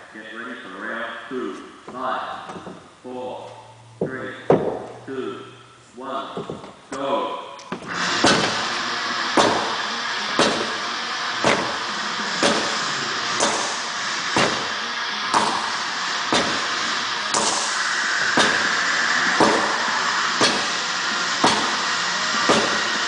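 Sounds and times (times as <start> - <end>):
sledgehammer thuds: 12.4 - 12.8, 16.3 - 16.7, 18.3 - 18.8, 19.4 - 19.8, 20.4 - 20.8, 21.4 - 21.8, 22.4 - 23.0.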